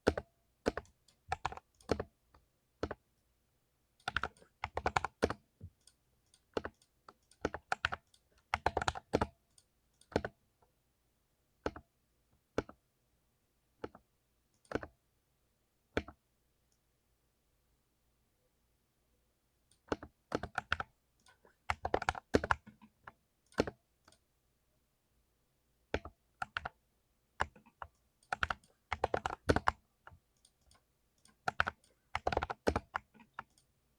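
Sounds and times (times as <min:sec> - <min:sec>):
mechanical keyboard typing: 0:00.0 - 0:02.1, 0:04.0 - 0:05.4, 0:06.5 - 0:09.4, 0:19.8 - 0:24.2, 0:26.0 - 0:26.8, 0:27.4 - 0:29.8, 0:30.4 - 0:33.6.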